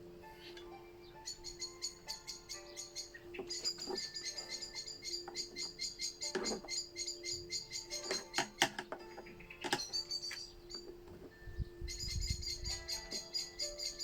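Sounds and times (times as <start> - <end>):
blackbirds chirping: 0.0 - 14.0
sharp clicks and knocks: 8.0 - 11.3.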